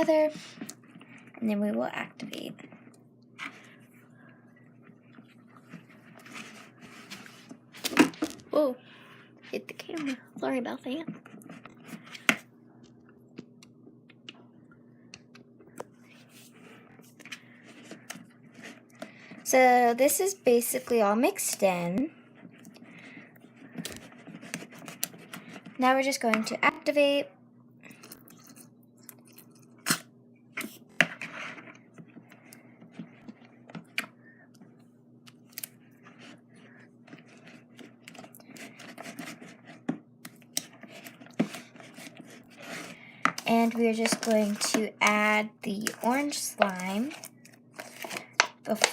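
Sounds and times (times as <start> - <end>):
spatula stirring slime in a bowl: 16.0 - 27.2, 27.8 - 48.9.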